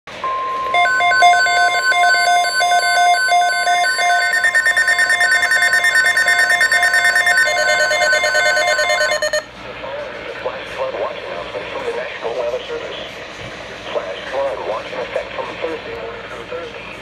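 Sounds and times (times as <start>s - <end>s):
steady alert tone: 0.1s - 9.4s
rapid chirping beeps: 0.8s - 9.4s.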